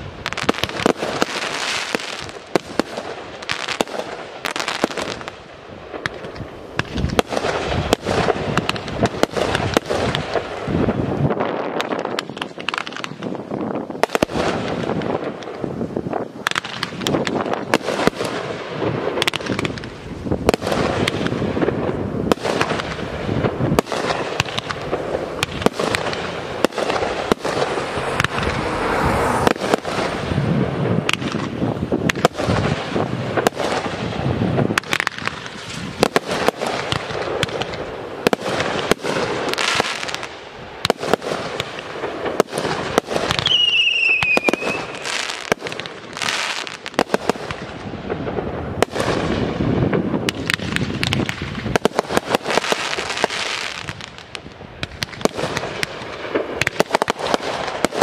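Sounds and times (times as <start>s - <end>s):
fireworks bursting and crackling: 0.0s - 58.0s
firework whistle falling in pitch: 43.4s - 45.0s.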